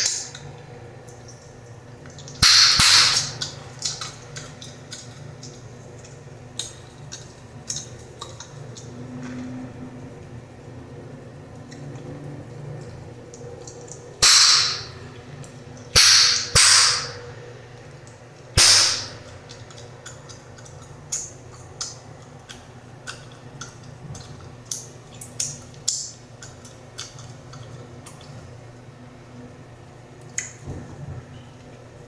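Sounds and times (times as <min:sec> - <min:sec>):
chewing gum popping: 0:03.4 - 0:09.0, 0:19.3 - 0:28.4.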